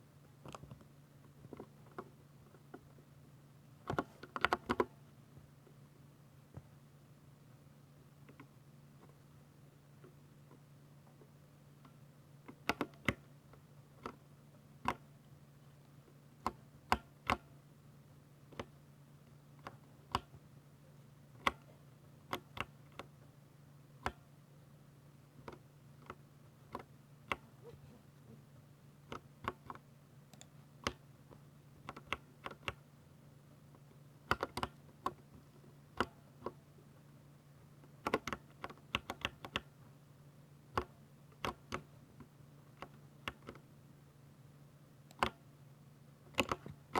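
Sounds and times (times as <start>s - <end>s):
steady low hum: 0.0s - 46.9s
mechanical keyboard typing: 34.3s - 35.2s, 38.0s - 39.7s, 46.3s - 46.9s.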